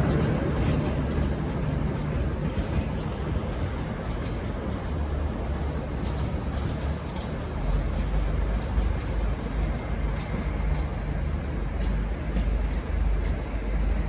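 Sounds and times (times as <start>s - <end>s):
diesel train rumble: 0.0s - 14.0s.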